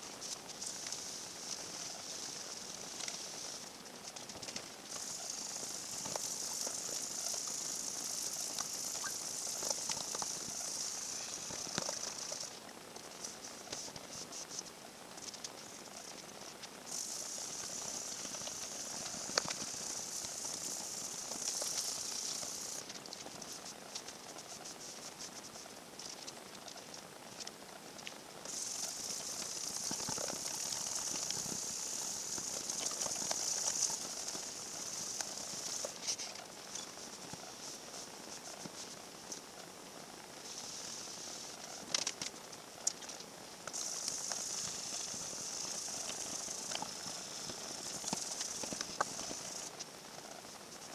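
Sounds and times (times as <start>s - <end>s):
light ticks and scrapes: 0.2s - 39.5s, 40.4s - 49.9s
wet sanding hiss: 4.9s - 14.6s, 16.9s - 23.6s, 28.5s - 39.0s, 40.4s - 42.2s, 43.7s - 49.7s.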